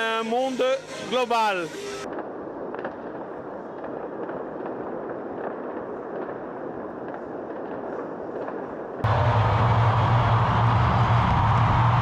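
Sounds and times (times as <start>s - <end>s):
fireworks popping: 2.0s - 9.1s
steady low hum: 9.0s - 12.0s.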